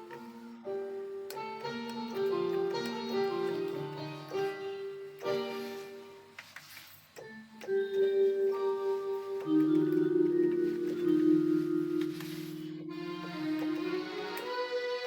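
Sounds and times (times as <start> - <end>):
synthesizer playing held chords: 7.2 - 15.0.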